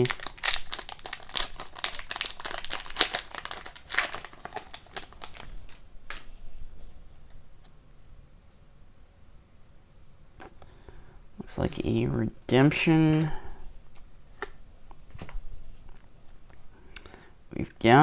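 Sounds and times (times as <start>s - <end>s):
foil wrapper tearing and crinkling: 0.0s - 6.3s.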